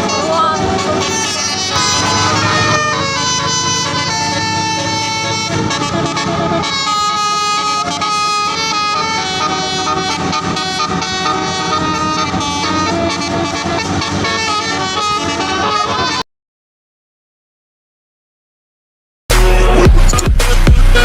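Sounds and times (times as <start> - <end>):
multi-tone air horn melody: 0.0 - 16.2
vehicle engine rumble: 0.0 - 16.2.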